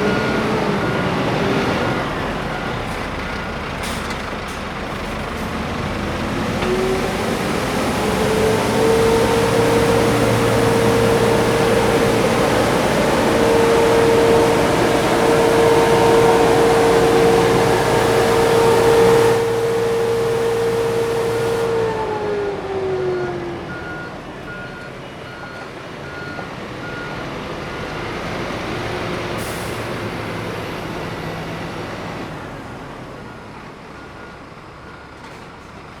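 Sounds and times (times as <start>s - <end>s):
road sweeper running: 0.0s - 23.7s.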